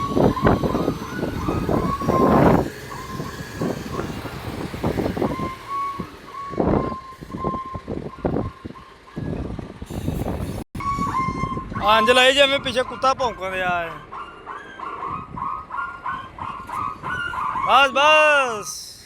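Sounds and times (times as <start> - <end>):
heavy machinery rattling: 0.0 - 10.6.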